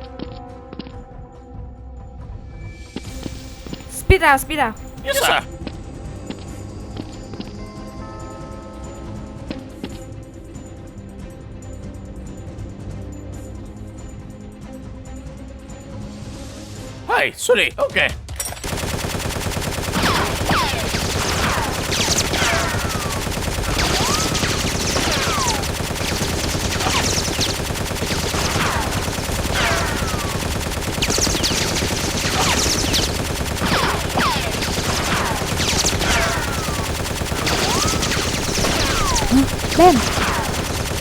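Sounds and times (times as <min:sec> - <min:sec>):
machine-gun fire effects: 0:18.6 - 0:41.0.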